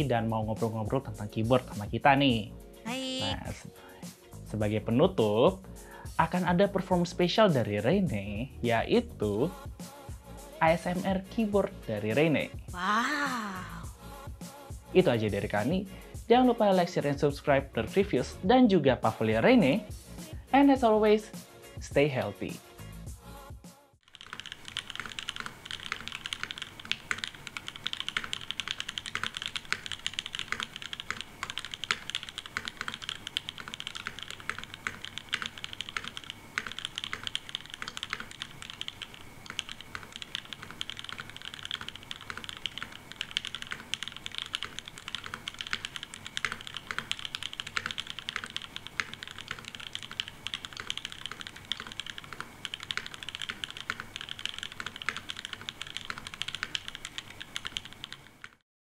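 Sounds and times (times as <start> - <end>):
mechanical keyboard typing: 24.0 - 58.6.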